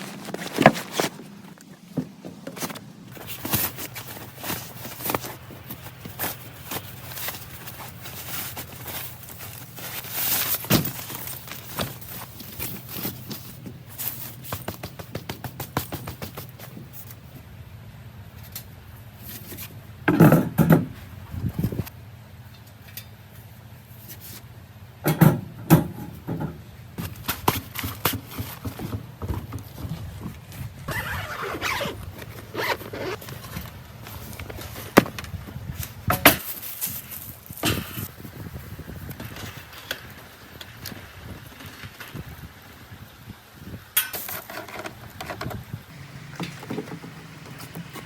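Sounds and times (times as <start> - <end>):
objects being handled: 0.0 - 17.2, 25.1 - 38.1.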